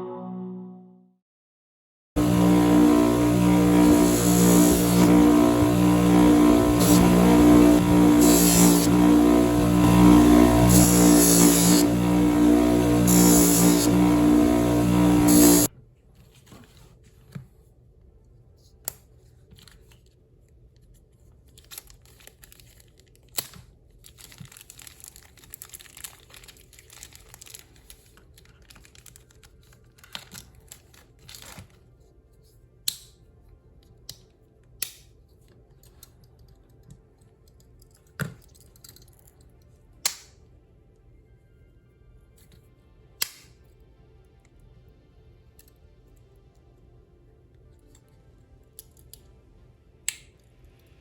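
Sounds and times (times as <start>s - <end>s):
faint background music: 28.4s - 51.0s.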